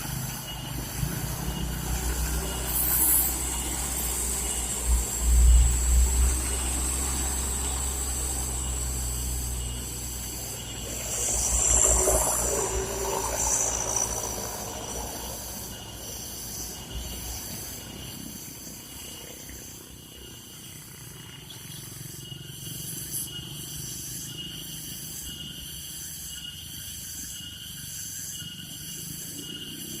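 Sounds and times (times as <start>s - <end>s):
truck diesel engine labouring: 0.0s - 18.1s.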